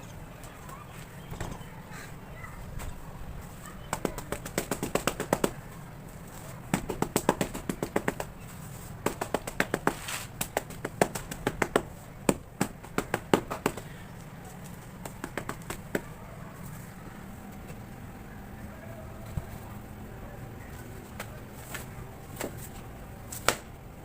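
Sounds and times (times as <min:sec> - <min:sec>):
sharp tapping on hardened cement: 0:03.9 - 0:05.6, 0:06.7 - 0:14.0, 0:14.6 - 0:16.2.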